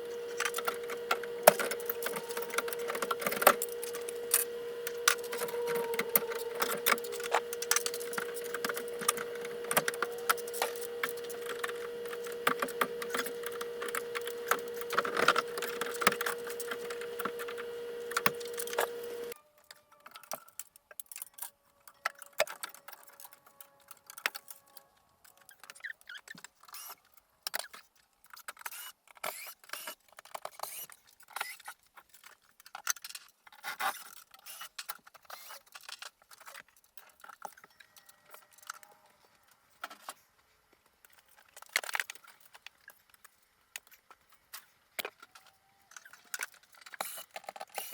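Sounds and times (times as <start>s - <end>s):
steady hum: 0.0s - 19.4s.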